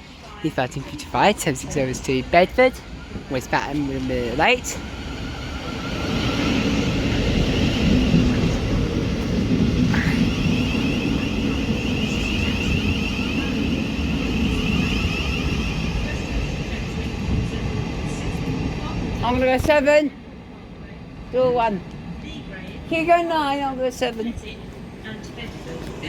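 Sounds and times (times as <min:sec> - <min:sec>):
train rumble with whine: 0:00.0 - 0:26.0
rising squeal: 0:10.2 - 0:16.3.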